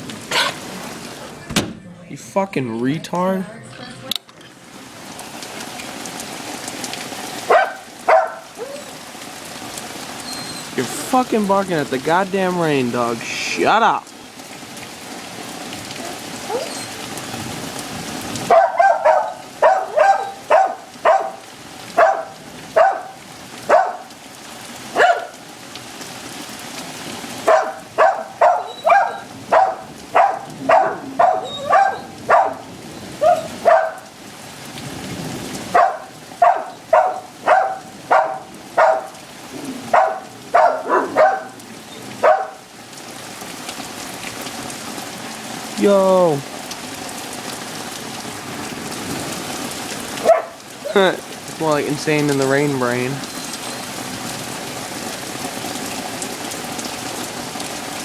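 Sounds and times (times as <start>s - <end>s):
heavy rain: 0.0s - 58.0s
dog barking: 0.3s - 0.6s, 7.5s - 9.0s, 16.0s - 17.0s, 18.4s - 24.1s, 24.9s - 25.4s, 27.4s - 34.1s, 35.7s - 39.2s, 39.8s - 41.6s, 42.2s - 42.6s, 50.2s - 51.0s.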